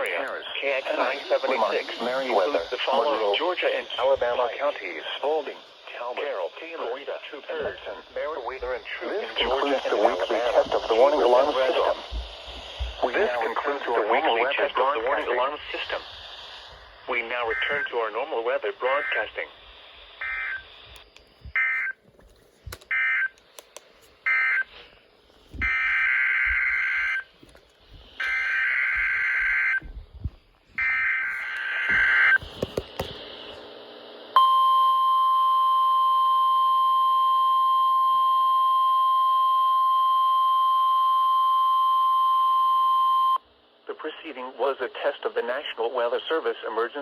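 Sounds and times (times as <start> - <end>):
steady warning alarm tone: 0.0 - 22.0, 22.9 - 23.4, 24.2 - 32.4
alert data tone bursts: 17.2 - 18.1, 18.8 - 19.6, 20.2 - 22.0, 28.2 - 29.8.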